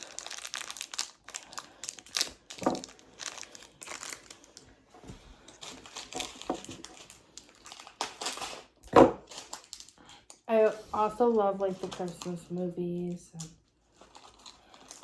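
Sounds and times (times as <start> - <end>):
plastic packaging crinkling: 0.0 - 15.0.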